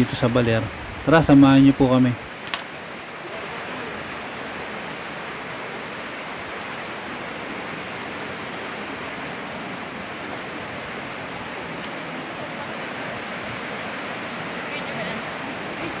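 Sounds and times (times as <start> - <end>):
flowing water rushing: 0.0 - 16.0.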